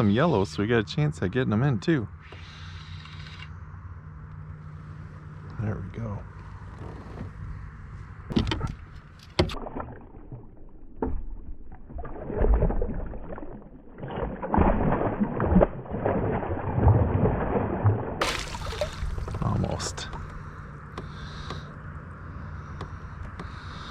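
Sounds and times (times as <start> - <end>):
fish splashing in water: 9.5 - 20.4
low thuds: 18.2 - 21.6.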